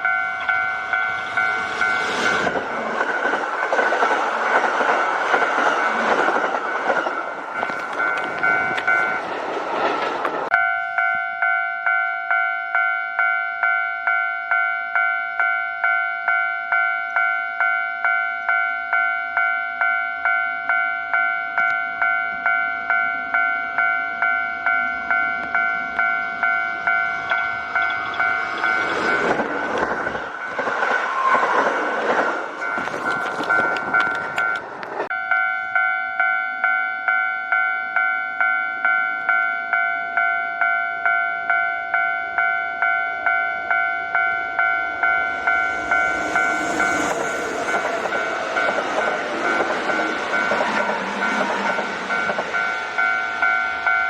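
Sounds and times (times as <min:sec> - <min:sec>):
train passing: 0:00.0 - 0:11.6, 0:22.0 - 0:35.7, 0:42.0 - 0:54.0
level crossing warning bell: 0:00.0 - 0:31.0, 0:32.5 - 0:54.0.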